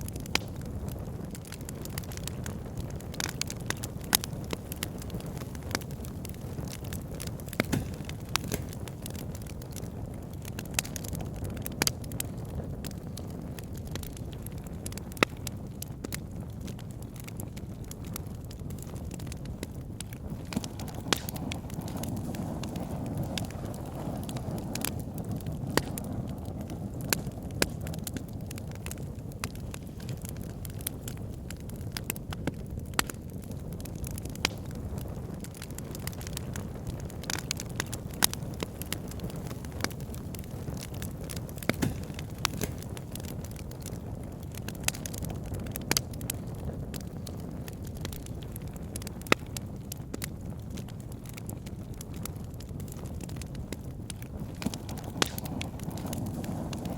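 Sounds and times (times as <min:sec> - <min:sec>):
low rush of flame: 0:00.0 - 0:56.9
wood crackling and popping: 0:00.0 - 0:56.9.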